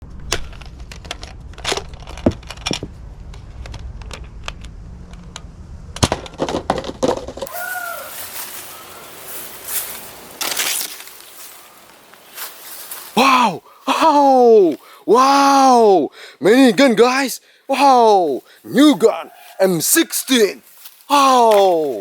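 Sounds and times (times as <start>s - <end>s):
low hum: 0.0s - 7.4s
crinkling: 6.3s - 13.2s.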